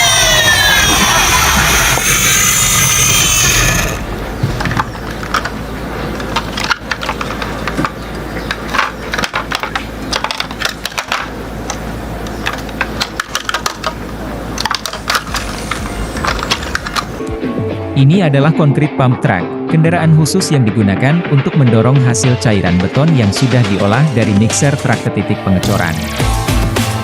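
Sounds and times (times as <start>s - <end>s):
music: 0.0s - 4.1s, 15.4s - 27.0s
hard parts clicking and knocking: 0.0s - 14.0s, 14.6s - 17.2s, 22.3s - 25.0s.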